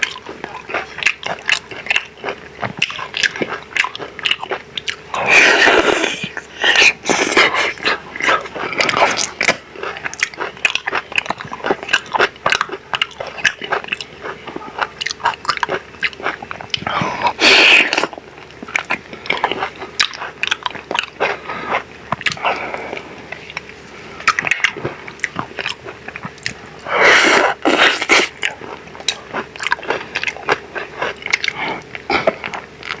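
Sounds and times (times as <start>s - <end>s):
chewing: 0.0s - 33.0s.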